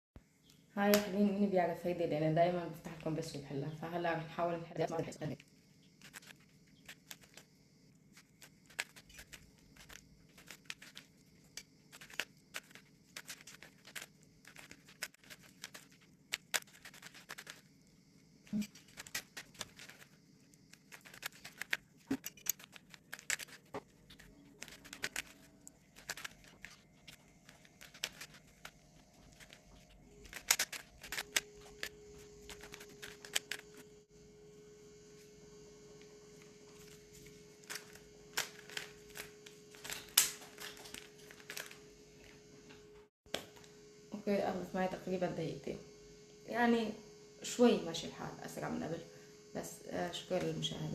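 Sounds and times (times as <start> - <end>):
faint steady hum: 0.2 - 50.9.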